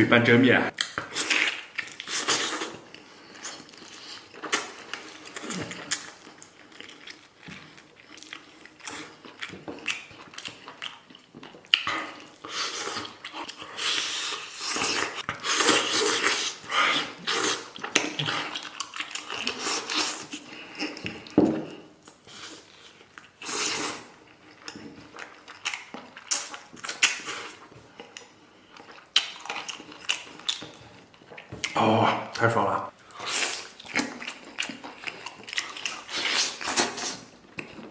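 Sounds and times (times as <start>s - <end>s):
chewing and smacking: 0.7s - 31.8s, 33.0s - 37.9s
slurping noodles: 1.1s - 6.0s, 11.9s - 21.3s, 23.4s - 24.2s, 35.6s - 37.4s.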